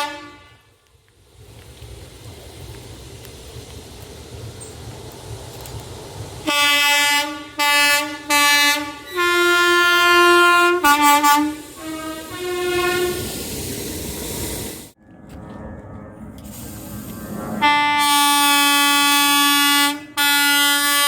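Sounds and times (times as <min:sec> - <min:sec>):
train horn blasts: 0:00.0 - 0:00.8, 0:06.4 - 0:13.3, 0:17.6 - 0:21.0
passing train noise: 0:00.0 - 0:21.0.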